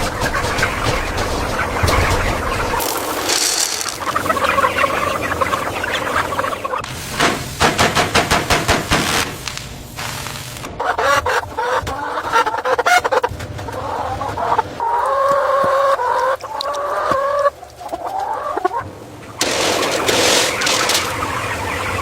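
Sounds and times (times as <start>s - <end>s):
chickens clucking: 0.0s - 8.8s, 10.0s - 22.0s
loud hissing noise: 2.8s - 10.7s.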